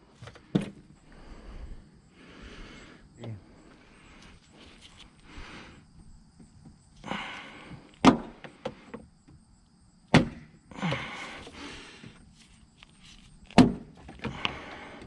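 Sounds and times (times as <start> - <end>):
scraping and rustling: 12.3 - 13.5.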